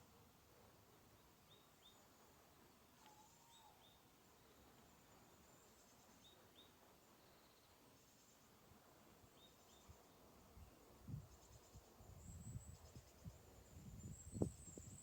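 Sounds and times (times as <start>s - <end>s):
quiet outdoor hiss: 0.0s - 15.0s
faint bird chirps: 3.0s - 8.4s.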